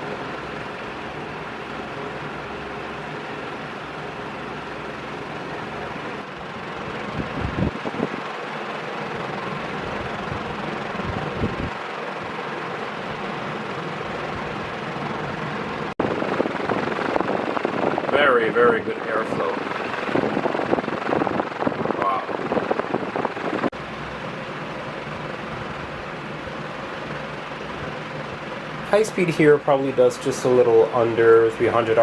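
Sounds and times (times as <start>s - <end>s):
ceiling fan air rushing: 0.0s - 32.0s
wind buffeting microphone: 7.0s - 8.3s, 9.8s - 11.8s, 16.0s - 23.8s.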